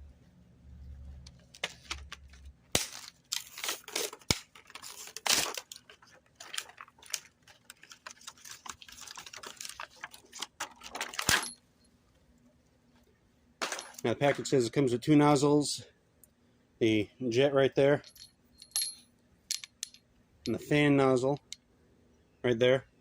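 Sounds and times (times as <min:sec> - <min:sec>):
packaging rustling and crinkling: 0:01.4 - 0:11.3.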